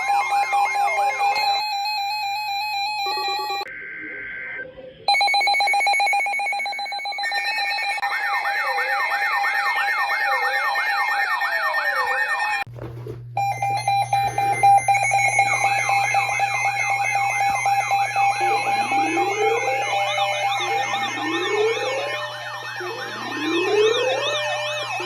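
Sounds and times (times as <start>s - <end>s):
falling siren wails: 0.0s - 12.7s, 13.4s - 25.0s
rapidly pulsing alarm tone: 5.0s - 12.7s, 13.4s - 25.0s
warbling siren sweeps: 14.4s - 25.0s.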